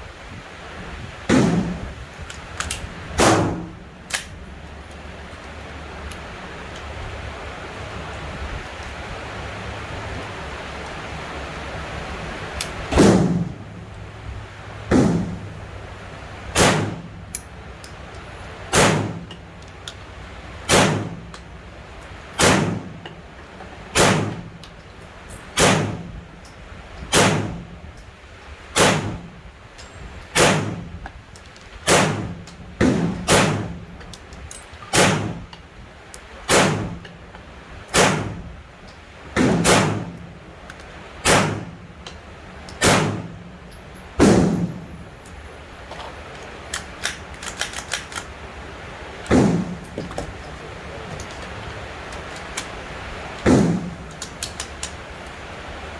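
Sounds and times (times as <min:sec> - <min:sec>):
gunshots: 0:01.3 - 0:01.9, 0:03.2 - 0:03.8, 0:12.9 - 0:13.6, 0:14.9 - 0:15.4, 0:16.6 - 0:17.1, 0:18.7 - 0:19.2, 0:20.7 - 0:21.2, 0:22.4 - 0:23.0, 0:24.0 - 0:24.5, 0:25.6 - 0:26.1, 0:27.1 - 0:27.6, 0:28.8 - 0:29.3, 0:30.4 - 0:30.9, 0:31.9 - 0:33.8, 0:35.0 - 0:35.4, 0:36.5 - 0:37.0, 0:38.0 - 0:38.5, 0:39.4 - 0:40.2, 0:41.2 - 0:41.8, 0:42.8 - 0:43.4, 0:44.2 - 0:44.8, 0:49.3 - 0:49.8, 0:53.5 - 0:54.0.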